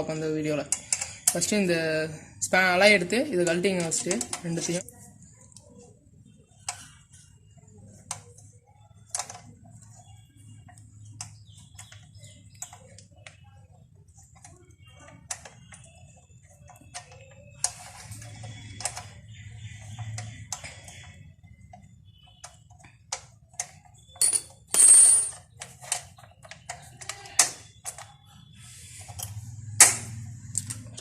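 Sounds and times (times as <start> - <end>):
metal tools clinking and scraping: 24.2 - 26.1.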